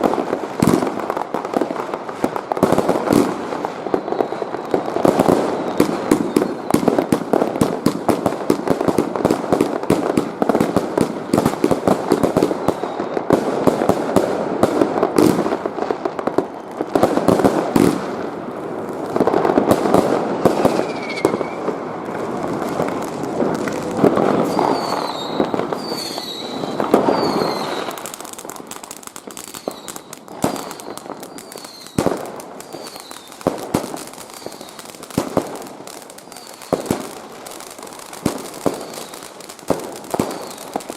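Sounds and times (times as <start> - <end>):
fireworks crackling and banging: 0.0 - 40.9
falling firework whistles: 3.0 - 7.2, 12.2 - 13.2, 19.8 - 23.0, 23.6 - 40.9.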